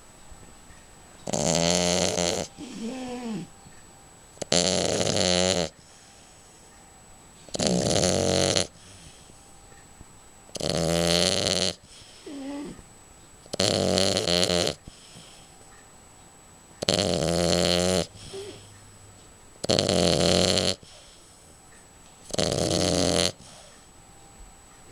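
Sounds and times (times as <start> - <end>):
dog snoring: 1.2 - 3.6, 4.4 - 6.6, 7.4 - 9.4, 10.5 - 12.9, 13.5 - 15.5, 16.8 - 18.8, 19.6 - 21.5, 22.2 - 23.8
wheezy breath: 2.4 - 3.5, 5.7 - 6.8, 7.5 - 9.5, 11.8 - 12.8, 14.8 - 15.7, 18.1 - 18.9, 20.3 - 21.7, 22.8 - 24.0.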